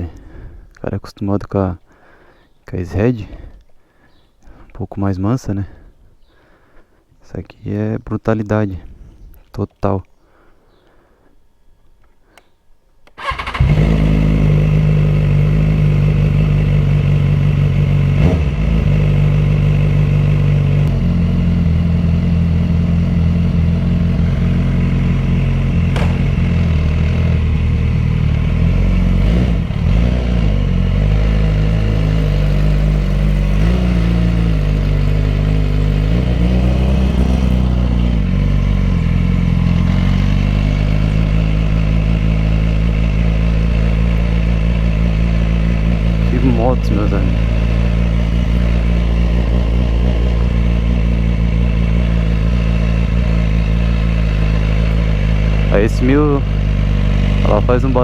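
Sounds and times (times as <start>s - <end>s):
motorcycle engine revving: 13.2s - 58.0s.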